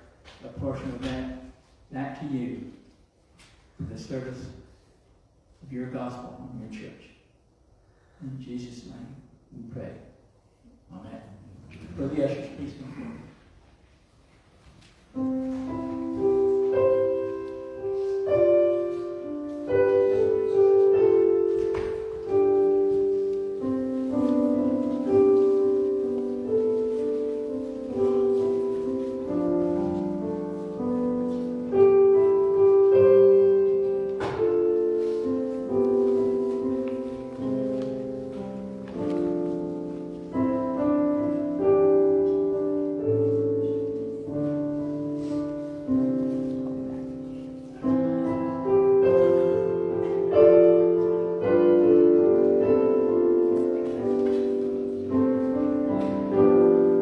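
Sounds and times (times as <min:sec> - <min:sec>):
slow solo piano: 0:15.1 - 0:57.0.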